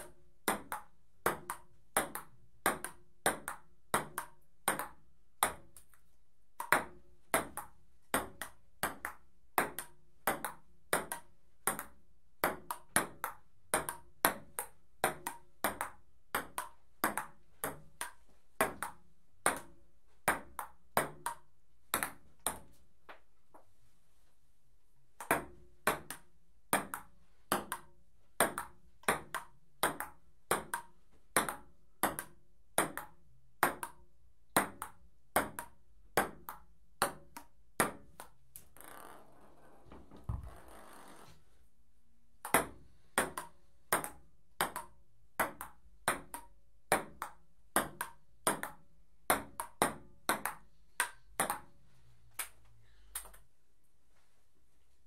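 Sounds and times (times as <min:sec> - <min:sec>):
ping-pong ball clicking: 0:42.4 - 0:51.7.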